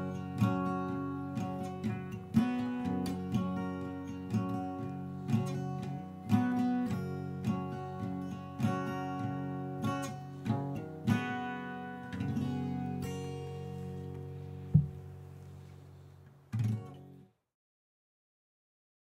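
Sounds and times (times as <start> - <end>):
acoustic guitar music: 0.0 - 17.4
sharp thump: 14.8 - 15.0.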